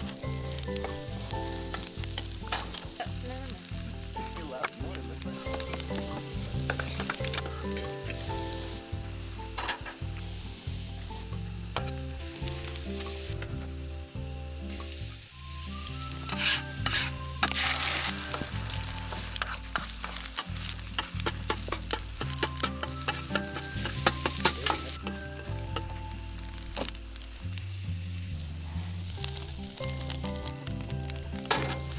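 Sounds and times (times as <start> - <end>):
background music with low beat: 0.0 - 31.9
food sizzling and crackling: 0.0 - 31.9.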